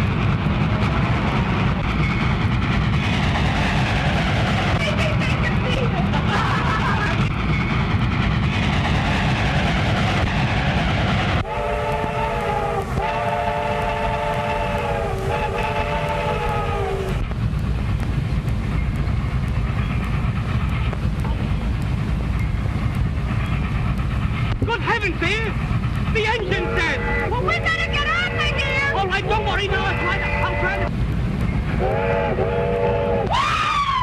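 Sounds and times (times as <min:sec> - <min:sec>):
train rumble and clatter: 0:00.0 - 0:34.0
train whistle chord blasts: 0:11.4 - 0:17.1, 0:31.8 - 0:33.3.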